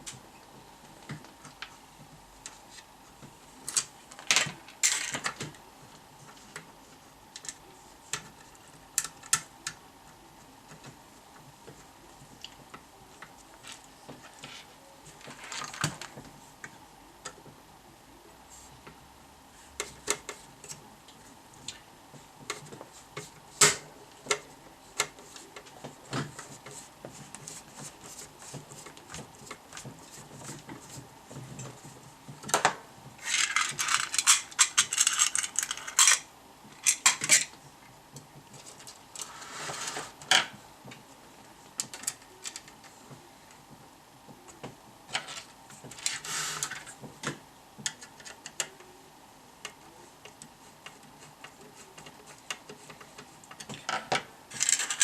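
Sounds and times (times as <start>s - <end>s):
small tools clicking and clattering: 52.4s - 55.0s.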